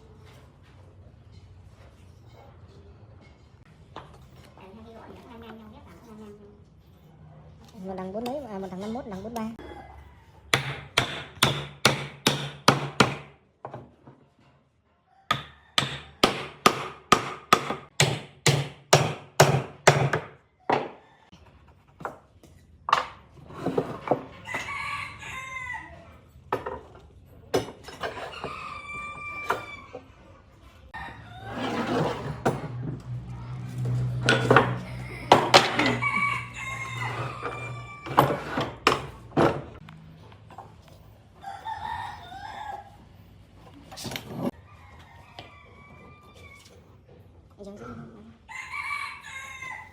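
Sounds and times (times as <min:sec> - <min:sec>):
rooster crowing: 0:09.6 - 0:10.5, 0:24.4 - 0:26.1, 0:28.2 - 0:30.1, 0:31.0 - 0:32.0, 0:35.6 - 0:38.7, 0:41.4 - 0:43.1, 0:44.5 - 0:46.9, 0:48.5 - 0:49.9.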